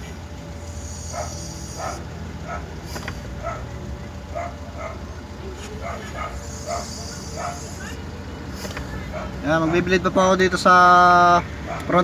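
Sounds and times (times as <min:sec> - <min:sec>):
steady low hum: 0:00.0 - 0:10.1
dog barking: 0:00.9 - 0:05.1, 0:05.7 - 0:08.0, 0:09.0 - 0:09.9, 0:11.6 - 0:12.0.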